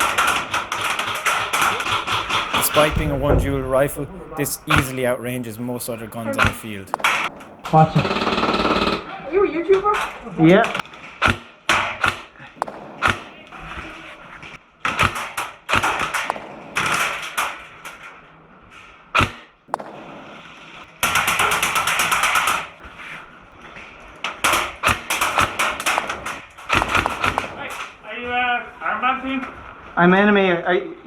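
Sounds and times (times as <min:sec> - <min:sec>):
airsoft single shots: 0:00.0 - 0:09.0, 0:12.6 - 0:14.1, 0:15.0 - 0:17.6, 0:19.7 - 0:22.7, 0:24.5 - 0:28.0
airsoft automatic fire burst: 0:00.0 - 0:09.2, 0:12.6 - 0:14.2, 0:15.1 - 0:17.8, 0:19.7 - 0:22.8, 0:24.4 - 0:28.0.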